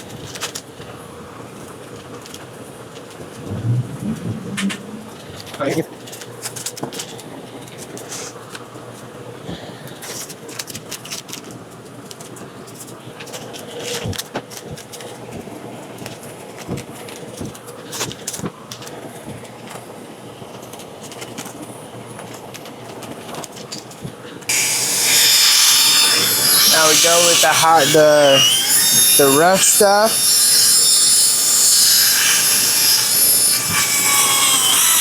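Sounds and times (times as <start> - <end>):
electric drill running: 24.5 - 35.0.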